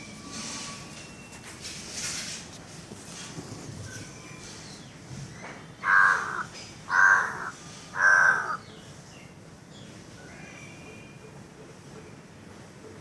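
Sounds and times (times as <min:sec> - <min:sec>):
crow cawing: 0:05.8 - 0:08.6.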